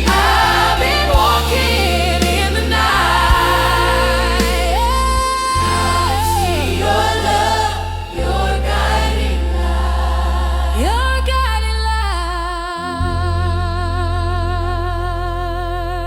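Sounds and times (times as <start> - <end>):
choir singing held notes: 0.0 - 11.3
lead voice singing high note: 0.0 - 11.3
bass line: 0.0 - 16.0.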